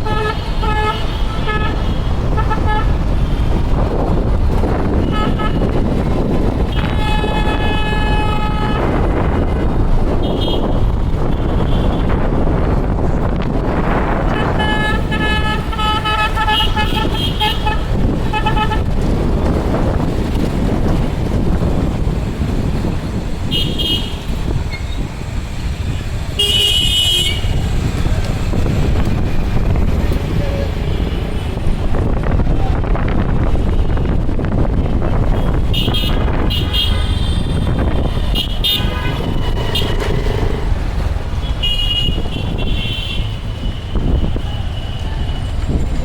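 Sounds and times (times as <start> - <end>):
vehicle horns honking: 0.0 - 3.6, 4.8 - 5.9, 6.6 - 12.2, 14.2 - 19.0, 23.4 - 25.1, 26.3 - 27.7, 35.2 - 40.4, 41.4 - 45.7
traffic rumble: 0.0 - 46.0.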